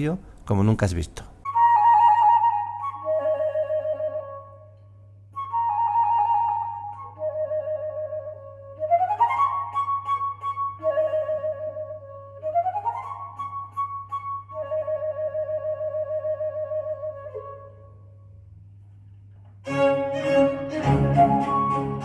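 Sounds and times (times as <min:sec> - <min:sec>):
slow flute-like melody: 0:01.4 - 0:18.4, 0:19.6 - 0:22.0
bowed strings passage: 0:19.6 - 0:22.0.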